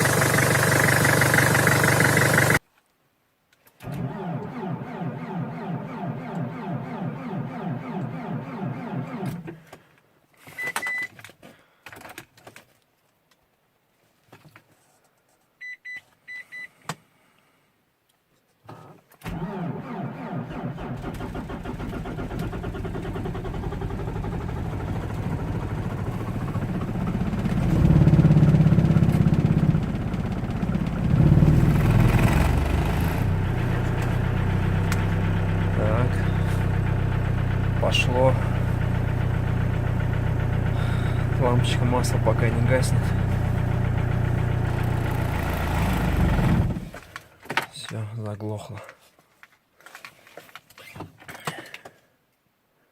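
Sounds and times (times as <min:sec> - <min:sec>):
diesel engine starting and revving: 0:00.0 - 0:02.6, 0:03.8 - 0:09.7, 0:19.3 - 0:47.1.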